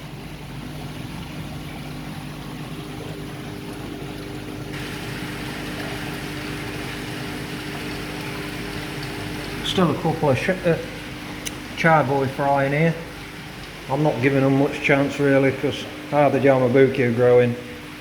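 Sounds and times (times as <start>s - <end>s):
pond pump humming: 0.0s - 18.0s
running water hiss: 4.7s - 18.0s.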